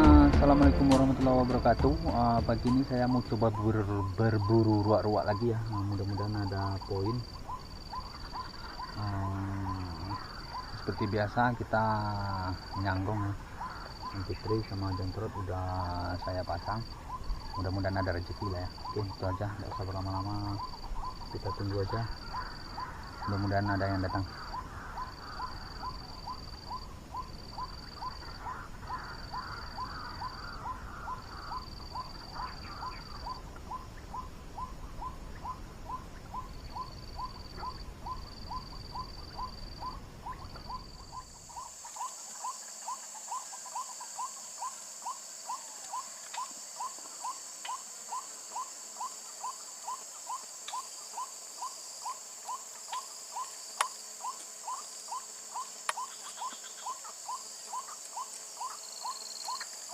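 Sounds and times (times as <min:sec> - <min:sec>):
high insect buzzing: 0:00.0 - 0:33.4, 0:36.4 - 0:59.9
monotonous bird call: 0:00.0 - 0:59.9.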